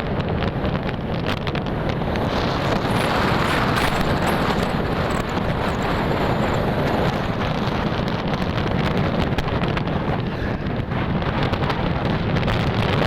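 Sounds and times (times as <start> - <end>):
road noise: 0.0 - 13.0
wind rushing over microphone: 0.0 - 13.0
motorcycle engine: 1.3 - 9.1.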